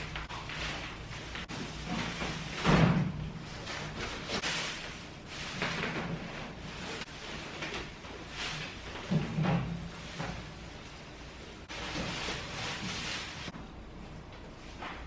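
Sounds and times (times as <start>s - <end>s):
cabinet parts thudding and knocking: 1.8s - 3.9s, 9.0s - 10.6s.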